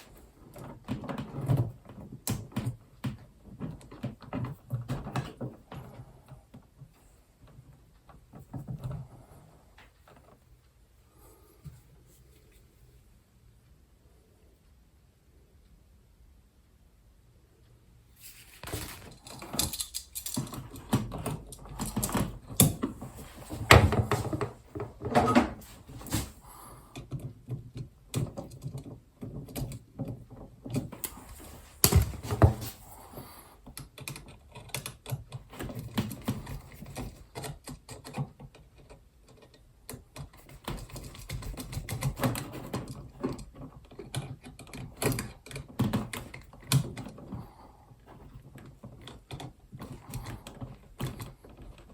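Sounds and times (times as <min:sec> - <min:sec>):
hands handling electrical wires: 0:18.2 - 0:33.2.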